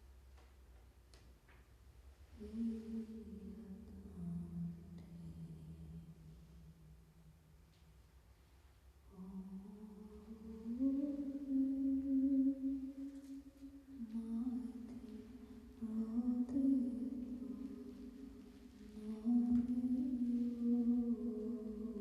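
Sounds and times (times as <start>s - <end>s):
person humming a melody: 9.1s - 22.0s.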